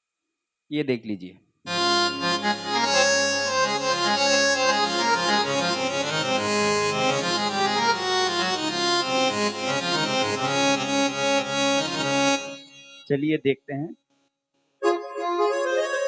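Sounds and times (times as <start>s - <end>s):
moving bass line: 1.7s - 12.5s
keyboard melody with harmonium tone: 1.7s - 13.3s, 14.8s - 16.0s.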